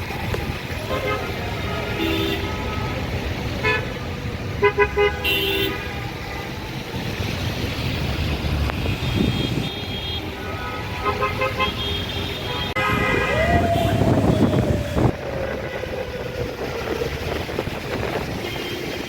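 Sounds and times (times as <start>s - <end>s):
traffic engine rumble: 0.0s - 19.0s
vehicle horns honking: 0.8s - 2.8s, 4.6s - 6.2s, 8.8s - 13.9s.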